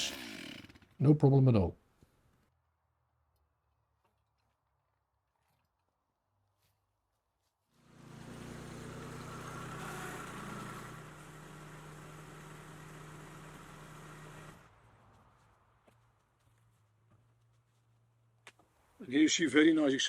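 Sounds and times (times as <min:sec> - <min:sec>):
chainsaw running at high revs: 0:00.0 - 0:00.9, 0:07.8 - 0:14.6.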